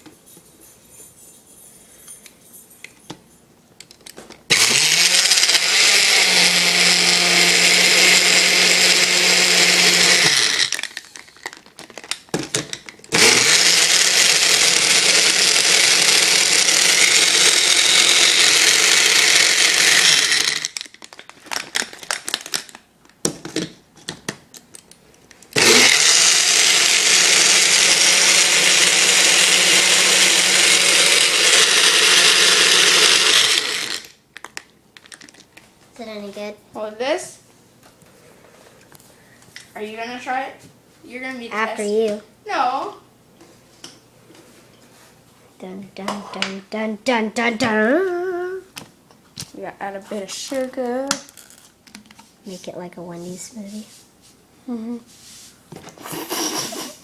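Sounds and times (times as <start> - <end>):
blender motor running: 4.5 - 10.9, 13.1 - 20.8, 25.6 - 34.1.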